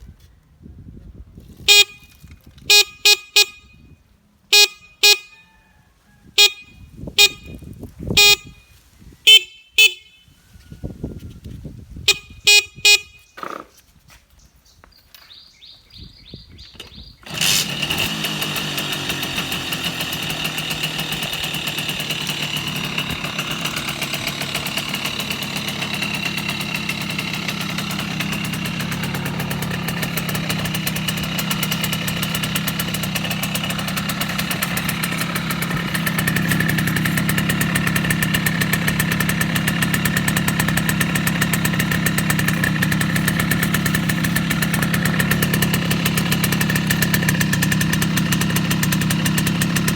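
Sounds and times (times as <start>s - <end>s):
moped engine starting and idling: 12.1s - 13.8s, 16.6s - 49.9s.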